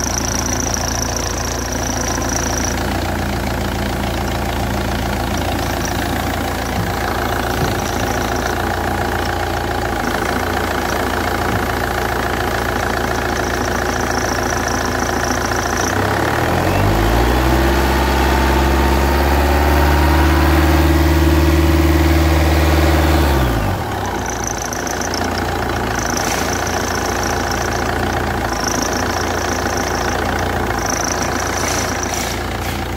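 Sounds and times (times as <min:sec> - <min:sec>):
car engine idling and revving: 0:00.0 - 0:32.9
high-pitched belt whine: 0:00.0 - 0:32.9.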